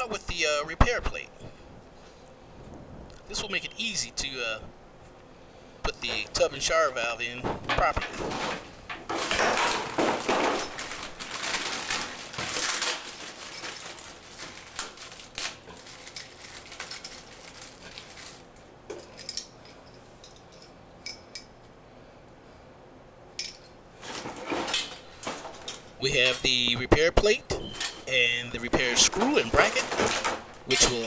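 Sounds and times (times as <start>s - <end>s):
small metal parts clinking: 9.2s - 14.8s, 16.0s - 18.2s, 19.0s - 21.5s.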